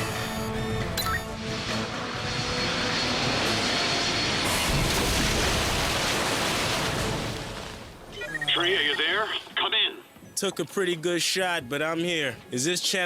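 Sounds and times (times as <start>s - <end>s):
music: 0.0s - 4.5s, 9.6s - 13.0s
cartoon jet engine rushing: 1.4s - 5.2s.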